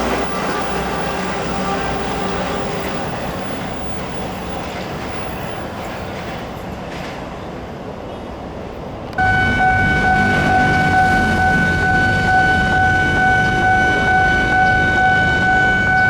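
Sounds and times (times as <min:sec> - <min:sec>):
train wheels rumbling on rails: 0:00.0 - 0:16.0
loud steady tones: 0:09.2 - 0:16.0.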